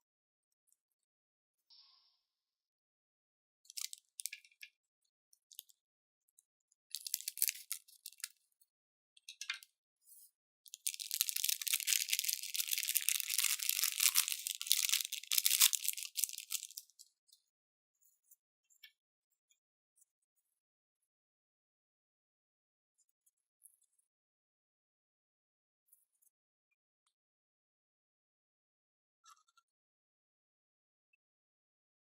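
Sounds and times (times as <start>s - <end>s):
dry crackling and rattling: 6.9s - 8.3s, 10.7s - 16.9s.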